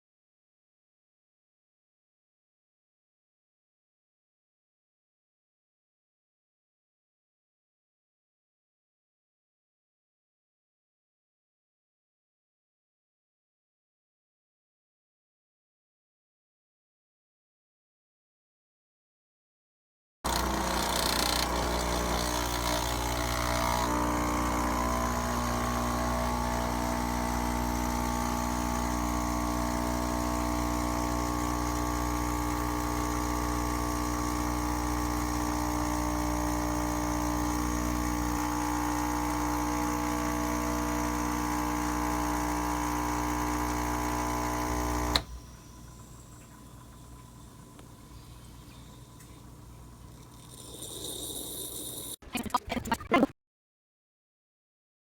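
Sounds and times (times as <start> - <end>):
espresso machine pump buzzing: 20.3 - 52.2.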